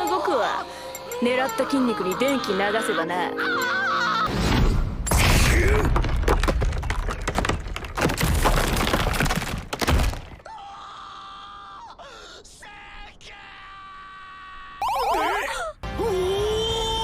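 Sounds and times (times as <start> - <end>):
soft background music: 0.0 - 4.2.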